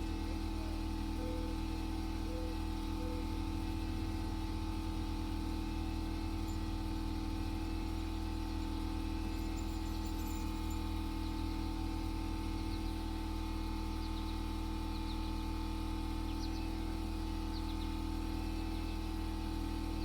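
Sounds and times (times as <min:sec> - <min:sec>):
birds chirping faintly: 0:13.8 - 0:19.2.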